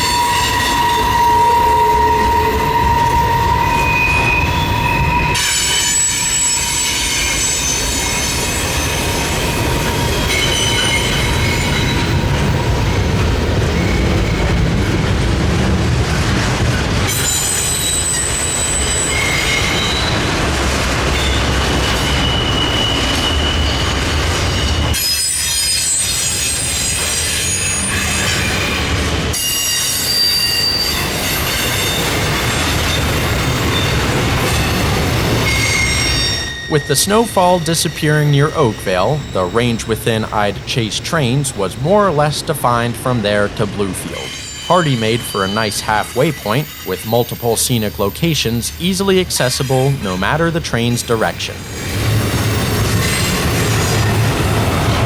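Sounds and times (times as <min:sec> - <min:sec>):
train wheels squealing: 0:00.0 - 0:15.2, 0:17.1 - 0:20.4, 0:21.1 - 0:36.9, 0:44.2 - 0:46.9
freight train rumbling: 0:00.0 - 0:25.2, 0:26.2 - 0:55.0.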